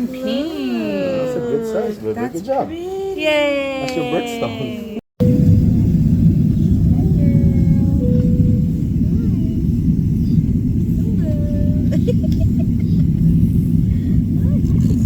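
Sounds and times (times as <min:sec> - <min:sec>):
loud low rumble: 0:05.2 - 0:15.0.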